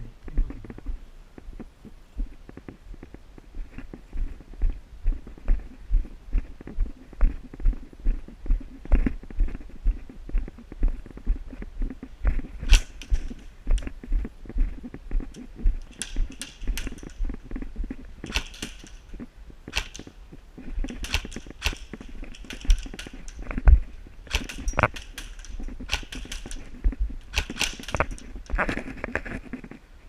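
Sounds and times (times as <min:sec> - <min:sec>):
footsteps walking: 0:00.2 - 0:29.9
airsoft guns firing: 0:18.2 - 0:19.1, 0:19.7 - 0:20.2, 0:20.9 - 0:23.4, 0:24.3 - 0:26.7, 0:27.3 - 0:28.6.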